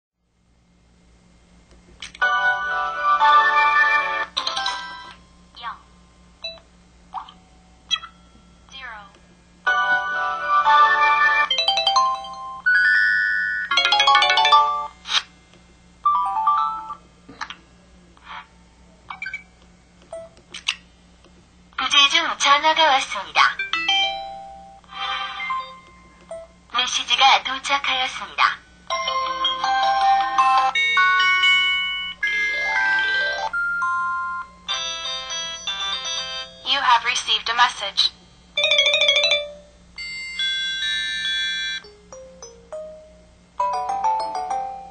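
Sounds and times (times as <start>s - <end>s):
electronic chimes and jingles: 28.9s - 36.0s
held electronic tone: 31.9s - 34.5s.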